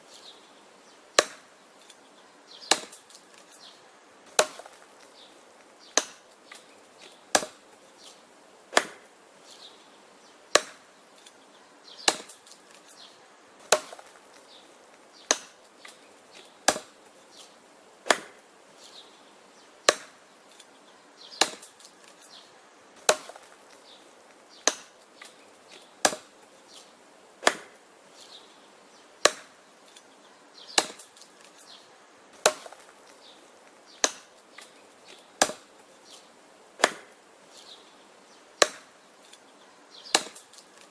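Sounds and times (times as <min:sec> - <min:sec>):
axe chopping wood: 0:01.2 - 0:01.6, 0:02.6 - 0:03.5, 0:04.3 - 0:07.7, 0:08.7 - 0:09.1, 0:10.5 - 0:10.9, 0:12.0 - 0:13.0, 0:13.6 - 0:18.4, 0:19.8 - 0:20.3, 0:21.3 - 0:22.2, 0:23.0 - 0:27.8, 0:29.2 - 0:30.0, 0:30.7 - 0:31.6, 0:32.4 - 0:37.2, 0:38.6 - 0:38.9, 0:40.1 - 0:40.9.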